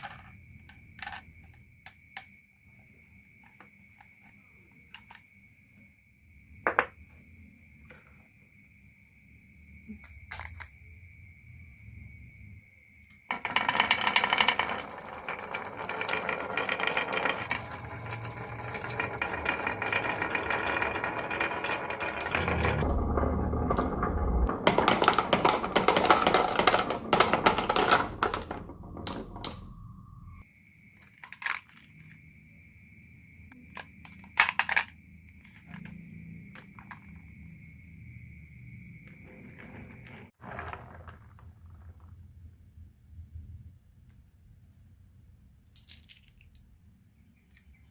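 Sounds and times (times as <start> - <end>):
marbles clattering down a wooden run: 1.0 - 1.2, 13.3 - 29.9.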